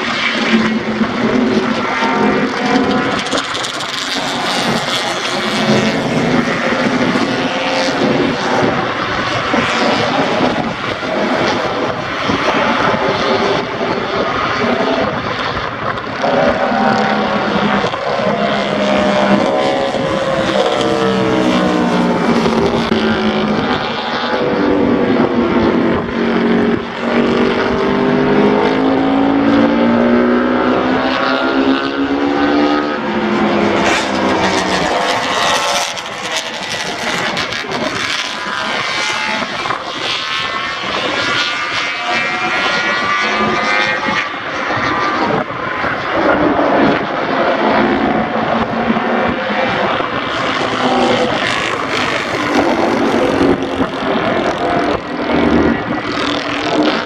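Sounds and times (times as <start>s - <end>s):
racing motorcycle engines: 0.0s - 57.0s.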